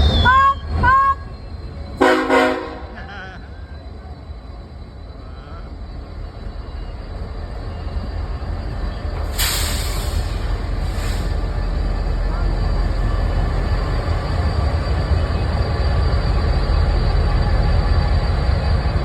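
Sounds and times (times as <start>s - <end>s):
low rumble of passing train: 0.0s - 19.0s
locomotive air horn blast: 2.0s - 2.9s
brief hiss: 9.3s - 11.4s.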